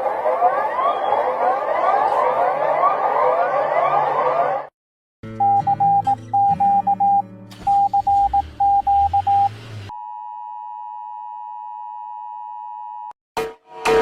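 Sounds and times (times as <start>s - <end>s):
on-off beeps: 5.4s - 10.6s.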